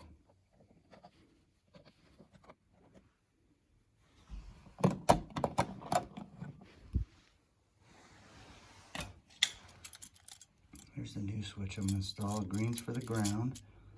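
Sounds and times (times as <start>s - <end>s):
switch parts clicking and knocking: 11.8s - 13.6s.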